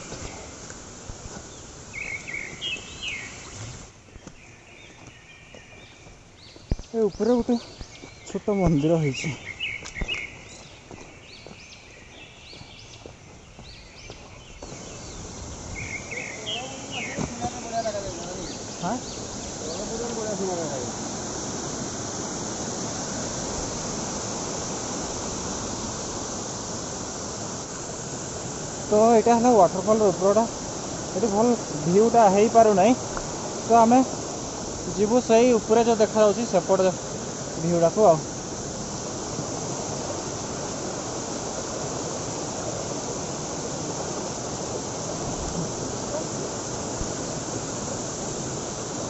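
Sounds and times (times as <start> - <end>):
water rushing down a waterfall: 14.6 - 49.0.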